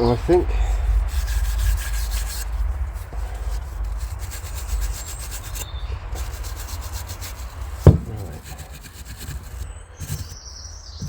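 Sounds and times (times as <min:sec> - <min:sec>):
scrubbing rust off metal: 0:00.0 - 0:11.0
sharp knock: 0:07.8 - 0:08.6.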